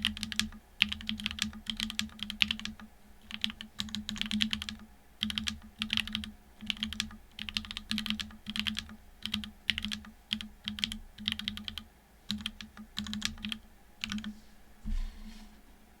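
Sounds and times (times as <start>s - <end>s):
typing on mechanical keyboard: 0.0s - 14.3s
low thump: 14.8s - 15.4s.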